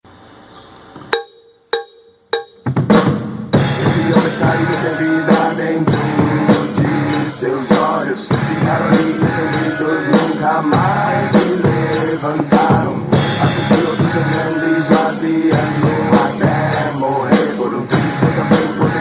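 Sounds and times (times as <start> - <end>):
count-in clicks: 1.0 - 2.7
drum kit beat: 1.1 - 19.0
song playing: 1.1 - 19.0.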